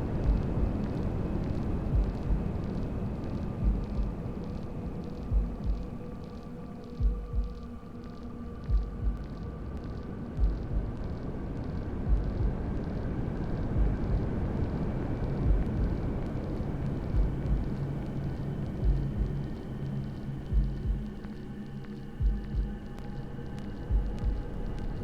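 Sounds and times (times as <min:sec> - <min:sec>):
heartbeat thumps: 0:00.2 - 0:00.9, 0:01.8 - 0:02.6, 0:03.5 - 0:04.2, 0:05.2 - 0:05.9, 0:07.0 - 0:07.7, 0:08.6 - 0:09.4, 0:10.4 - 0:11.1, 0:12.0 - 0:12.8, 0:13.8 - 0:14.2, 0:15.4 - 0:16.1, 0:17.1 - 0:17.8, 0:18.8 - 0:19.5, 0:20.5 - 0:21.2, 0:22.2 - 0:22.9, 0:23.9 - 0:24.5.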